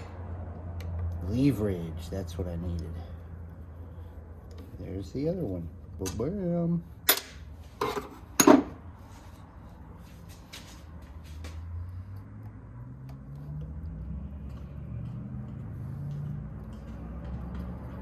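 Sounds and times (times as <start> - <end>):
low engine drone: 10.7 - 18.0.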